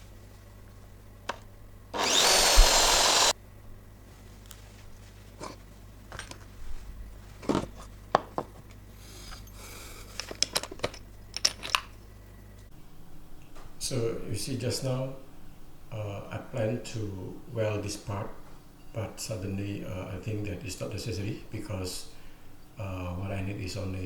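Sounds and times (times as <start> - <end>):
power tool motor whining: 2.0 - 3.3
metal parts clicking and knocking: 10.1 - 12.0.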